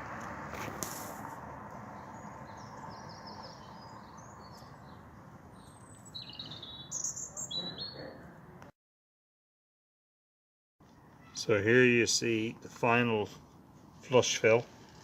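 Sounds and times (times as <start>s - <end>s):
outdoor background noise: 0.0s - 8.7s, 10.8s - 15.0s
small birds chirping: 1.7s - 8.6s.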